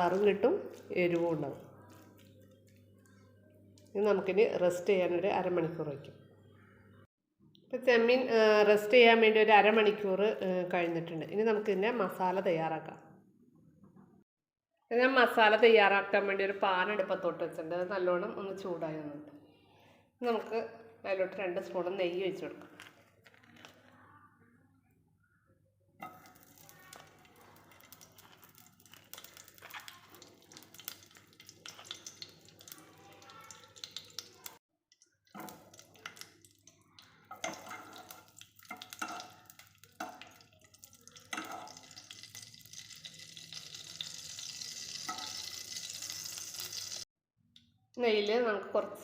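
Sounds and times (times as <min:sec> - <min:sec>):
ghee sizzling in a hot pan: 0:26.0 - 0:34.6, 0:35.3 - 0:47.1
spoon clinking against a pan: 0:37.3 - 0:42.4, 0:45.0 - 0:45.6.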